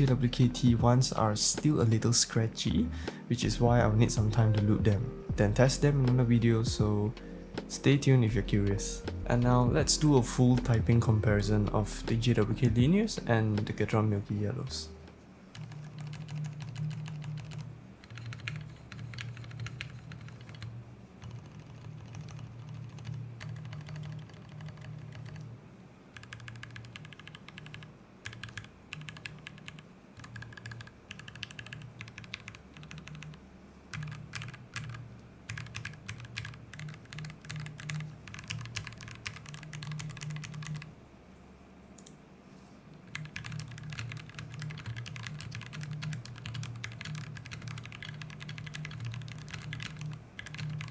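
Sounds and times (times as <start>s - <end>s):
typing on mechanical keyboard: 15.6s - 25.5s, 26.2s - 40.9s, 43.1s - 50.9s.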